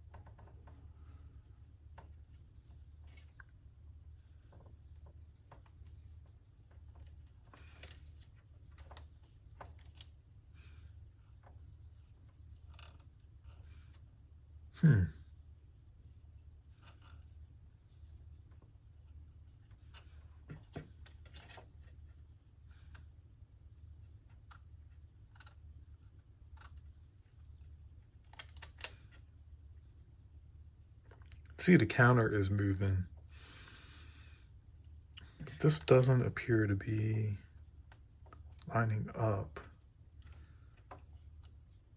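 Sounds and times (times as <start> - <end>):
low steady hum: 0.0 - 41.9
plastic parts clicking and rustling: 4.5 - 10.1, 26.4 - 29.3, 34.8 - 36.3.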